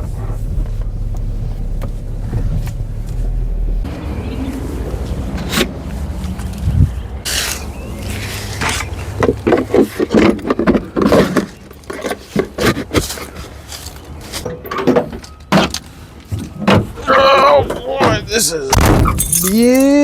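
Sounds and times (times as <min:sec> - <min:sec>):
vehicle engine humming: 0:00.0 - 0:10.0
knocks and clattering: 0:09.1 - 0:13.2.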